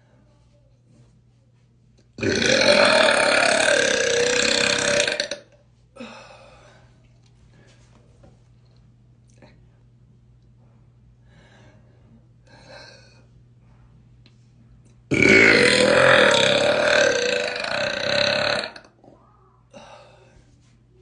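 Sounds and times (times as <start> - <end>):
person burping: 2.2 - 5.5, 15.1 - 18.9.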